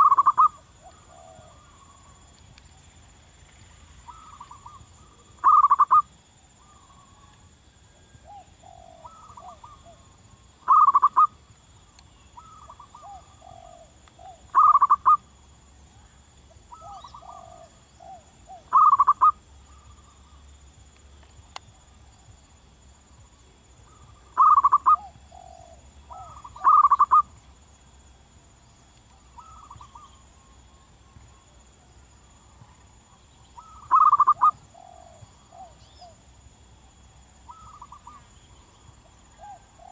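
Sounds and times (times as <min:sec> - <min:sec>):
dove cooing: 0:00.0 - 0:02.0, 0:04.1 - 0:07.3, 0:08.0 - 0:11.4, 0:12.4 - 0:15.2, 0:16.7 - 0:19.9, 0:23.8 - 0:27.3, 0:29.4 - 0:30.2, 0:33.6 - 0:36.2, 0:37.5 - 0:38.2, 0:39.3 - 0:39.9.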